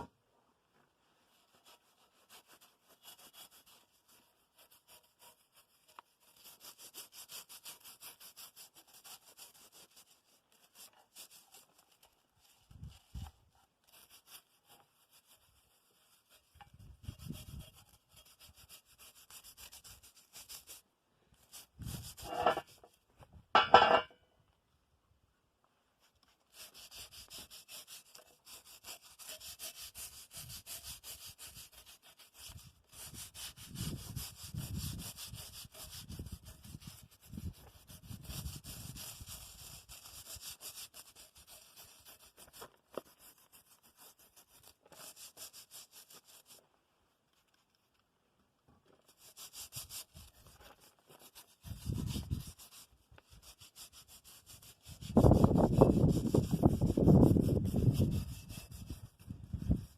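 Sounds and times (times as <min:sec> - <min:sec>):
brush scrubbing on metal: 0:00.9 - 0:24.1, 0:26.0 - 0:48.0, 0:48.9 - 0:59.9.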